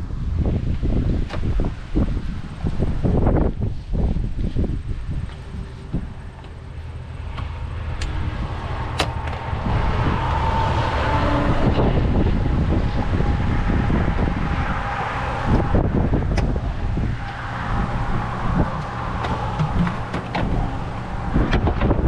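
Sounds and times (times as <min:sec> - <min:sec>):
wind buffeting microphone: 0:00.0 - 0:22.0
sharp clicks and knocks: 0:08.9 - 0:09.4, 0:18.6 - 0:22.0.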